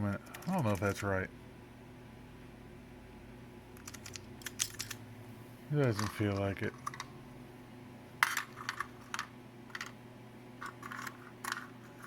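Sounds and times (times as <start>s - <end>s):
keyboard keys clicking: 3.8s - 5.0s.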